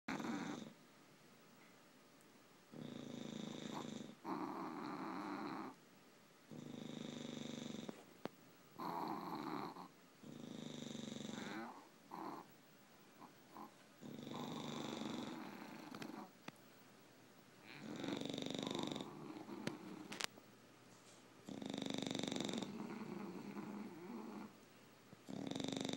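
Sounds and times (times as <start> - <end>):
dogs snoring: 0.1 - 0.8, 2.7 - 5.8, 6.5 - 8.1, 8.8 - 12.6, 13.2 - 16.5, 17.6 - 20.3, 21.4 - 24.6, 25.2 - 25.9.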